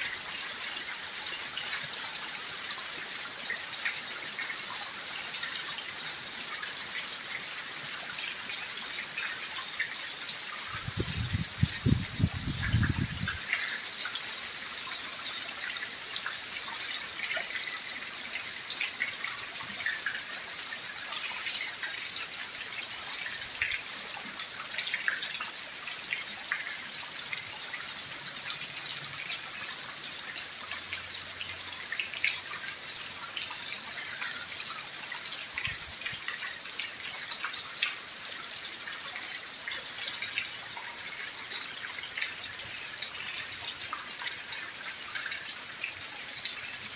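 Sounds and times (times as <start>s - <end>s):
steady rain hiss: 0.0s - 46.9s.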